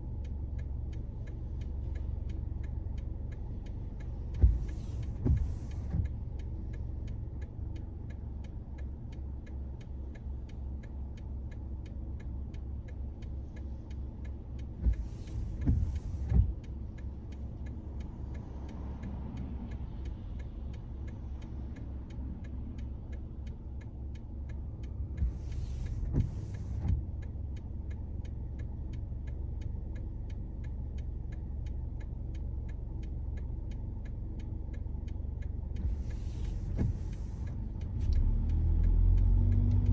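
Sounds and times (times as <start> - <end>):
car engine and road rumble: 0.0 - 39.9
windscreen wiper swishes: 1.5 - 7.8, 13.4 - 27.2, 35.6 - 39.9.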